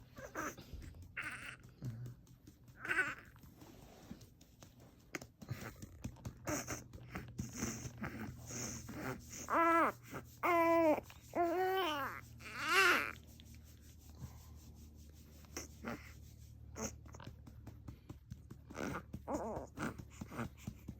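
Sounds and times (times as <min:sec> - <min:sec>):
baby crying: 0:00.2 - 0:00.6, 0:01.2 - 0:01.7, 0:02.8 - 0:03.3, 0:09.0 - 0:13.2
light taps: 0:00.6 - 0:08.4, 0:17.0 - 0:20.9.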